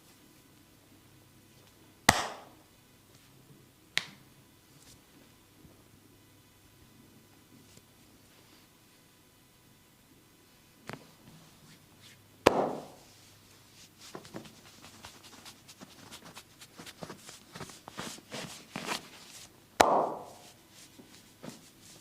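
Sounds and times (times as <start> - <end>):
hands rubbing skin: 13.7 - 19.5.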